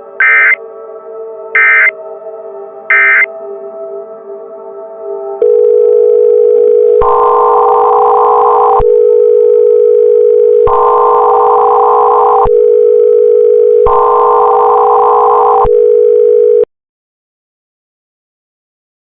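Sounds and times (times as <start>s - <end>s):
electronic emergency alert tone: 0.2s - 0.6s, 1.6s - 2.0s, 2.9s - 3.3s, 5.4s - 16.7s.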